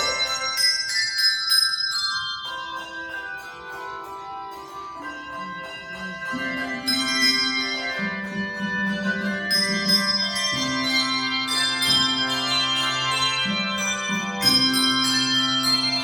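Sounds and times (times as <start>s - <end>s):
handbell ensemble playing: 0.0s - 16.0s.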